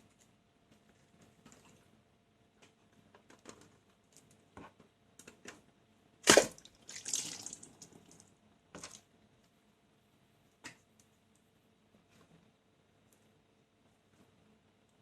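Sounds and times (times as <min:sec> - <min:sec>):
water balloon bursting: 0:06.2 - 0:07.6
water splashing: 0:06.3 - 0:08.1.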